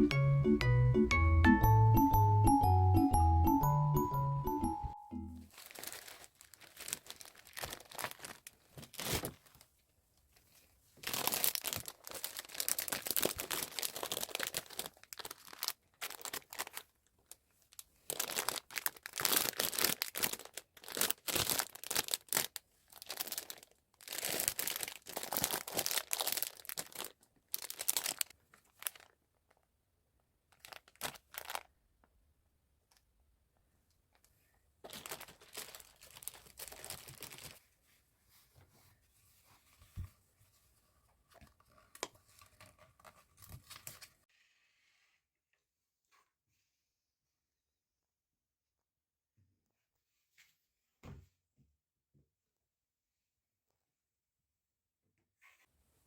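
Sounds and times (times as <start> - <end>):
background music: 0.0 - 5.5
packaging crinkled and torn: 5.5 - 9.7, 11.0 - 29.7, 30.5 - 31.7, 34.9 - 37.6.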